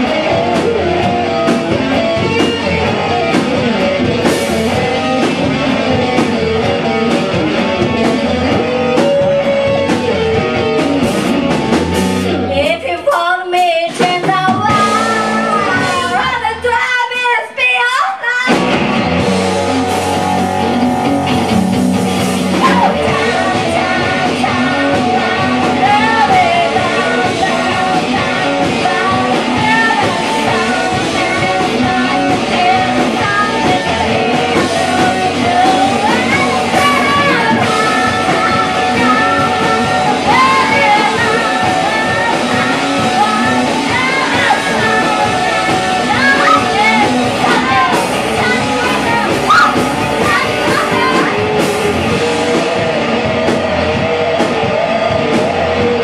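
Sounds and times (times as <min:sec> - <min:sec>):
rock band playing: 0:00.0 - 0:56.0
person singing: 0:12.4 - 0:18.6, 0:22.5 - 0:52.8.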